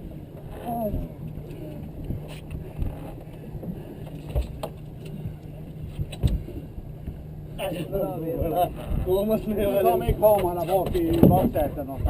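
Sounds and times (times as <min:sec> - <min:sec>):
boat engine humming: 0:00.0 - 0:12.0.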